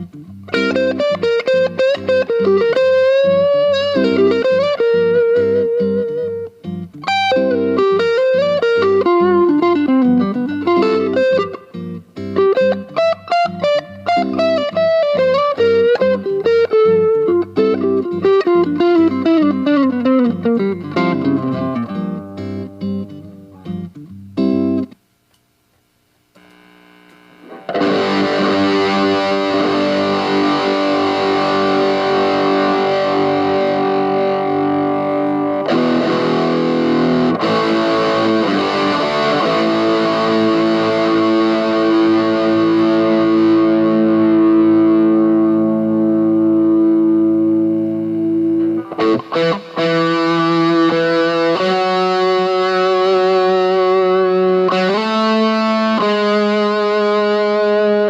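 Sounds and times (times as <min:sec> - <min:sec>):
distorted electric guitar: 0:00.0 - 0:25.0, 0:26.2 - 0:58.0.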